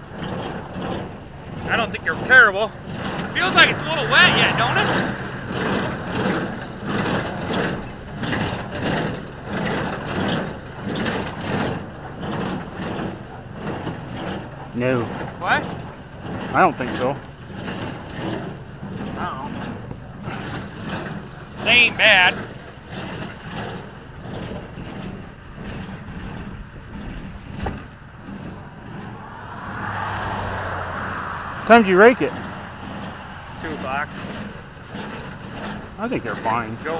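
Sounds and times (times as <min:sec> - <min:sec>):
tractor and baler pulsing drone: 0:00.0 - 0:36.9.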